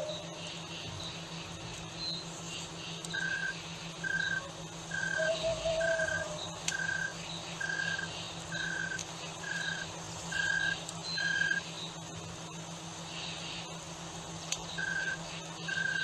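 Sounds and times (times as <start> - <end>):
steady low hum: 0.0 - 16.0
faint high chirps: 3.1 - 12.0
low drawn-out animal call: 3.2 - 11.6.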